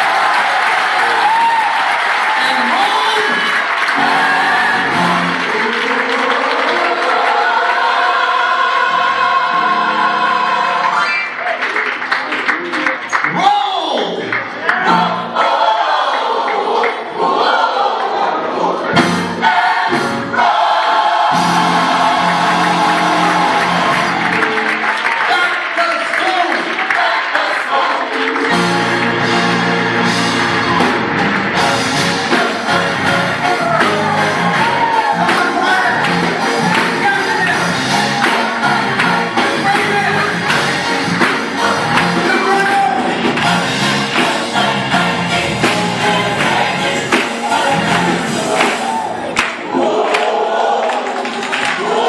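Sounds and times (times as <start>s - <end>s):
choir singing gospel: 0.0s - 11.4s, 14.7s - 52.0s
band playing a steady beat: 4.0s - 5.7s, 18.9s - 20.5s, 21.3s - 25.0s, 28.5s - 49.3s.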